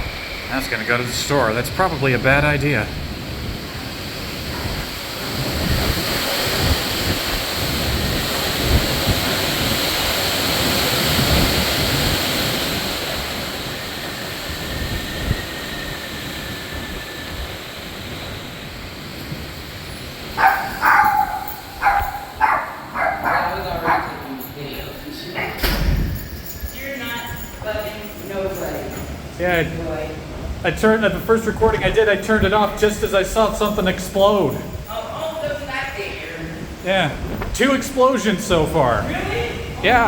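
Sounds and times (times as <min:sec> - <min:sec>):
faint whistle on the wind: 0:00.0 - 0:01.8, 0:12.8 - 0:24.0
storm wind gusting: 0:00.0 - 0:40.0
wind buffeting microphone: 0:00.0 - 0:40.0
dog barking: 0:20.3 - 0:24.4.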